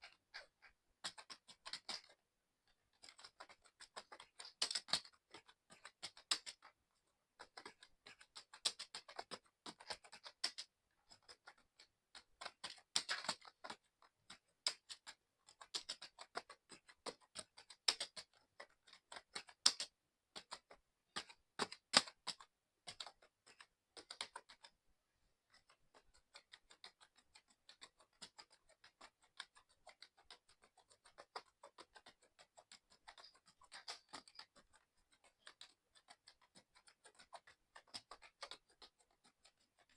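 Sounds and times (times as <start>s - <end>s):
mechanical keyboard typing: 0.0s - 2.2s, 2.9s - 6.8s, 7.4s - 24.7s, 25.6s - 39.9s.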